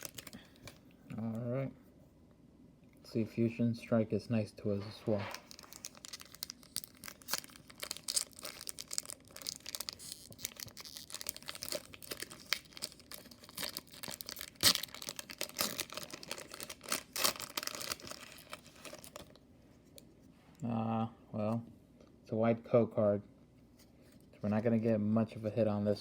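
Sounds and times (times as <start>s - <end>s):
foil wrapper crinkling and tearing: 0.0s - 0.8s, 5.1s - 19.4s.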